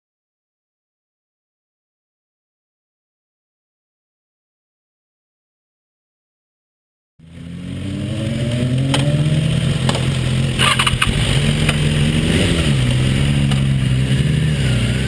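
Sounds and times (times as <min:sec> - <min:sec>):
motorcycle engine running: 0:07.2 - 0:15.0.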